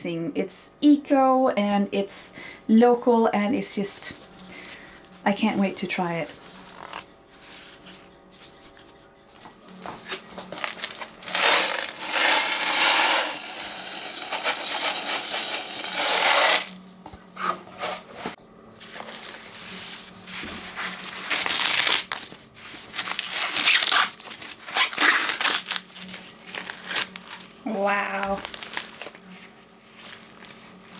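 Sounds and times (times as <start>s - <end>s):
corn husks rustling and tearing: 10.0s - 12.6s, 18.8s - 30.9s.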